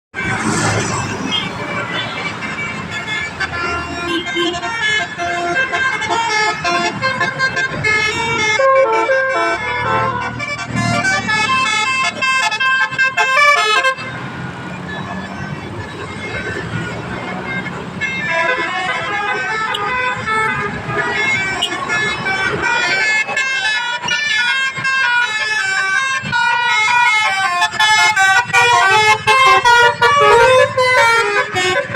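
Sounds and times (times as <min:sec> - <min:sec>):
bus engine rumble: 0:00.1 - 0:31.9
musical bus horns: 0:00.1 - 0:31.9.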